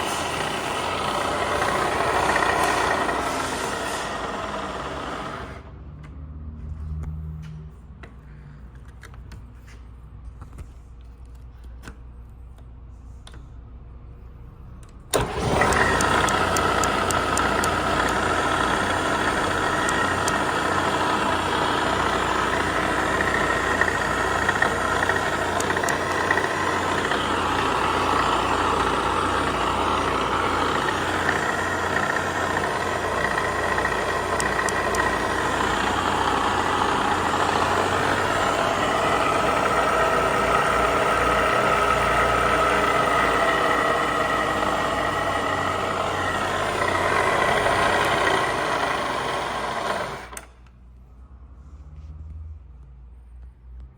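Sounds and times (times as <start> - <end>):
milling machine running: 0.0 - 5.7, 15.1 - 50.5.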